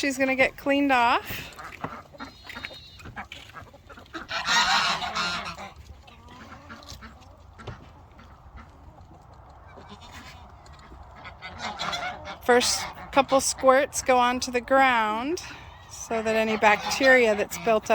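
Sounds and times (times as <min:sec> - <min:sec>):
farm animal harsh call: 0:01.2 - 0:08.7, 0:09.6 - 0:13.4.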